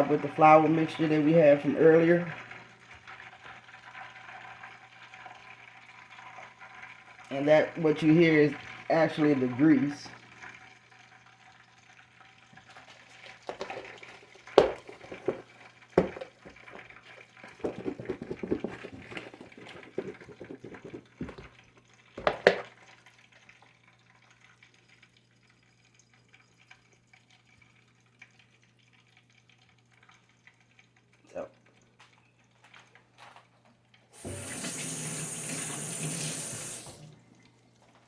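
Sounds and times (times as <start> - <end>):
oil crackling in a pan: 0.0 - 34.6
rustling and clatter: 13.4 - 21.6.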